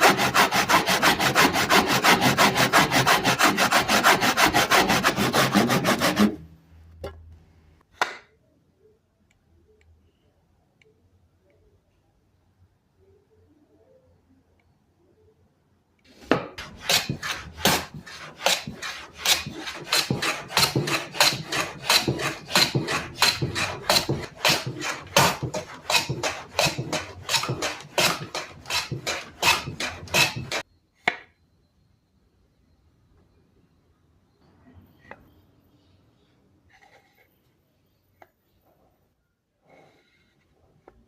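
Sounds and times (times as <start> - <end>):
hand tool cutting wood: 0.0 - 6.4, 16.6 - 30.6.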